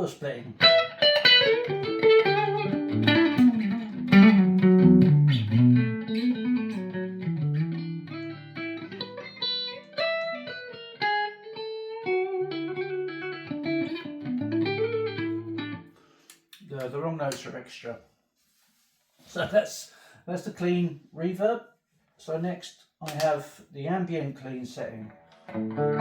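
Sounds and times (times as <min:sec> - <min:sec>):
clean electric guitar with reverb: 0:00.5 - 0:15.9, 0:25.0 - 0:26.0.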